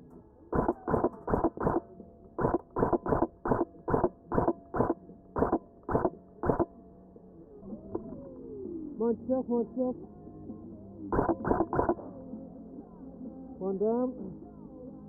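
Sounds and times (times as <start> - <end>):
muffled airsoft rifle shots: 0.5 - 6.8, 11.1 - 12.0.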